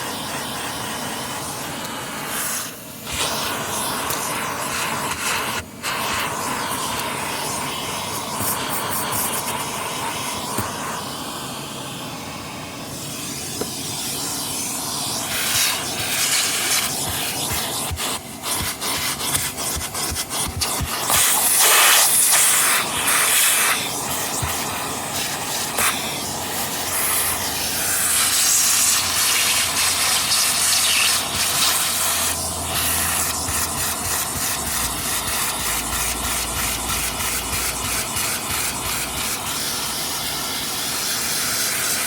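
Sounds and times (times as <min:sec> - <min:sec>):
vacuum cleaner hissing: 0:00.0 - 0:42.0.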